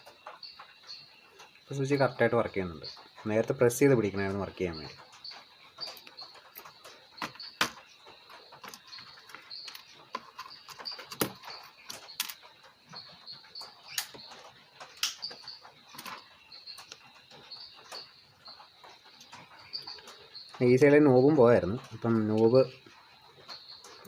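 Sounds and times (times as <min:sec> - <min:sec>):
steady high chirping: 0:00.0 - 0:24.0
small parts and tools clicking: 0:05.0 - 0:20.8.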